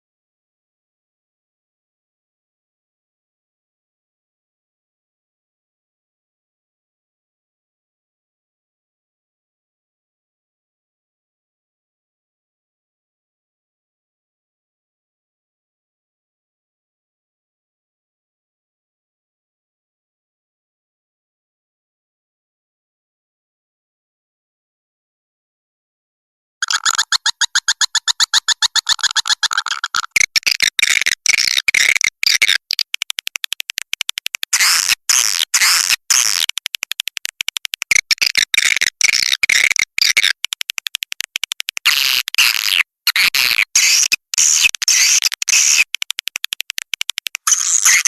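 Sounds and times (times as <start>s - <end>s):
bird rattling trill: 26.6s - 48.0s
high-pitched bird chirping: 26.6s - 48.0s.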